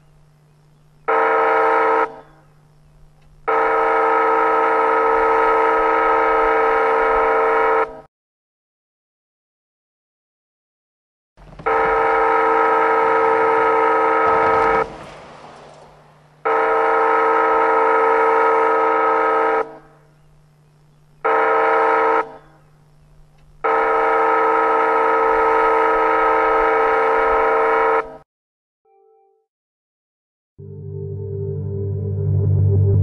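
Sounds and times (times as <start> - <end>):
railroad crossing horn blasts: 1.1 - 2.5, 3.4 - 8.1, 11.6 - 14.9, 16.4 - 20.1, 21.2 - 22.6, 23.6 - 28.2.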